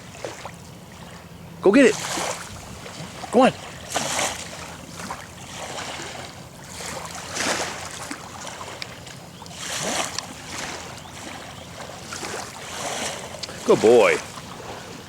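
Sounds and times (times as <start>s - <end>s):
river water lapping and splashing: 0.0s - 15.0s.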